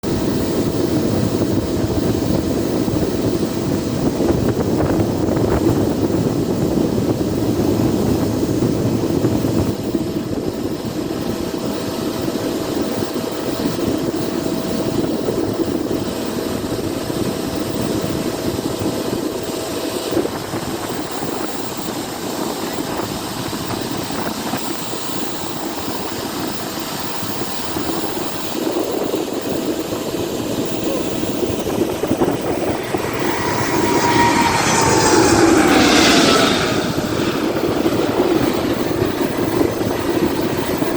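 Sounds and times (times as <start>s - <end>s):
jet engines rumbling: 29.8s - 40.9s
held whining tone: 30.5s - 40.9s.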